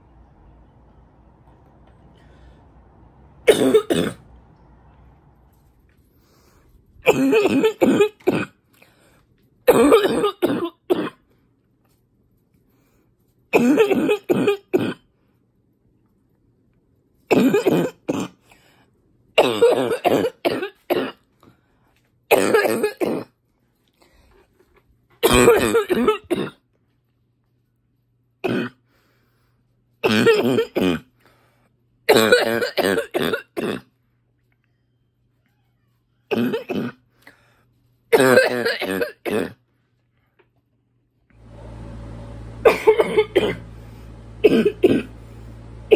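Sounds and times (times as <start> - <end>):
woman coughing: 3.5 - 4.2, 7.0 - 8.6, 9.7 - 11.2, 13.5 - 15.1, 17.3 - 18.4, 19.4 - 21.2, 22.3 - 23.3, 25.2 - 26.6, 30.0 - 31.1, 32.1 - 33.9, 36.3 - 37.0, 38.1 - 39.6, 42.6 - 43.7, 44.4 - 45.1.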